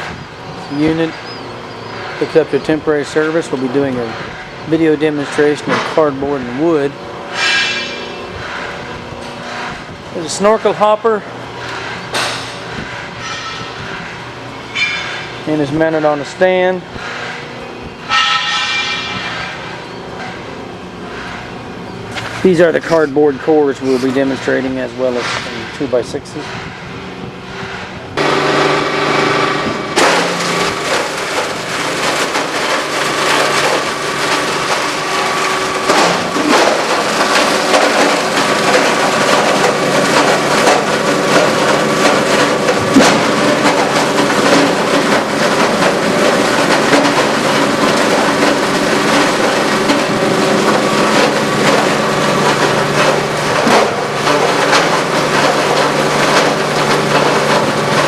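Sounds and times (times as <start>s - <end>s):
electric motor hum: 28.1s - 54.3s
granulator crackling material: 28.2s - 58.0s.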